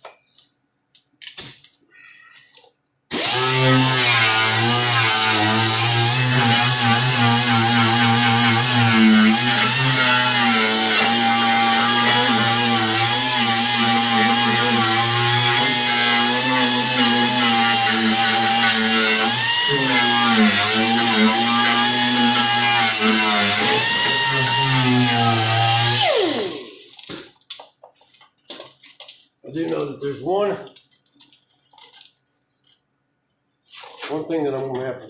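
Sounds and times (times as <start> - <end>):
angle grinder on sheet metal: 3.1 - 27.0.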